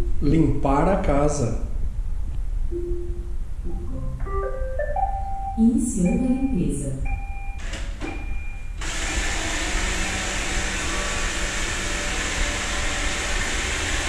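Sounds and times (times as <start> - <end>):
robot vacuum motor and brushes: 8.8 - 14.0.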